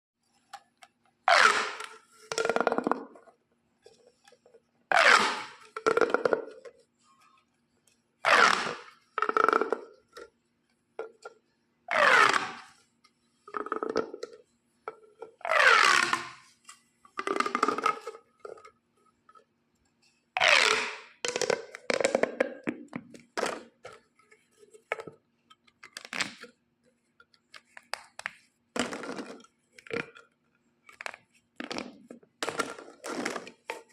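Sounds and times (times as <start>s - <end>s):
plastic pop tube toy stretched: 1.3s - 3.2s, 4.9s - 6.8s, 8.2s - 10.3s, 11.0s - 12.8s, 15.2s - 16.5s, 17.1s - 18.8s, 20.4s - 24.0s, 25.8s - 26.6s, 27.6s - 30.3s, 30.9s - 33.9s.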